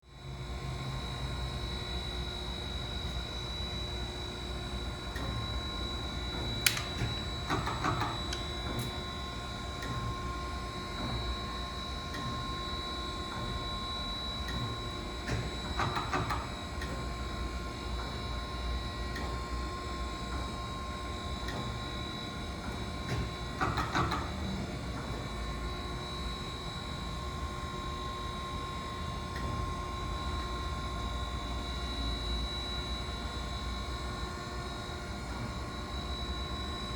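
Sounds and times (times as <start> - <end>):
sharp click: 6.7 - 7.1.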